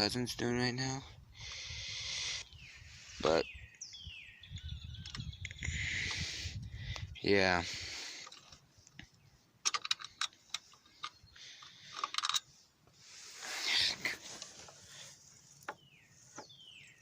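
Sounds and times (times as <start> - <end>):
light clicks of parts handled: 8.2 - 13.0
short rustle: 12.4 - 16.6.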